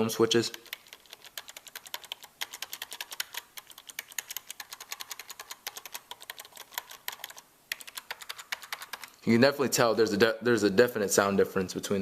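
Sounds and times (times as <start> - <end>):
fast typing on a keyboard: 0.4 - 9.2.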